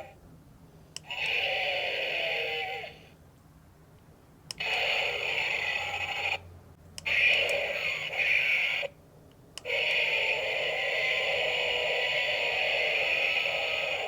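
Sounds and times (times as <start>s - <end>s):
toy dinosaur roar from small speaker: 1.0s - 3.1s, 4.6s - 6.4s, 7.0s - 9.0s, 9.6s - 14.0s.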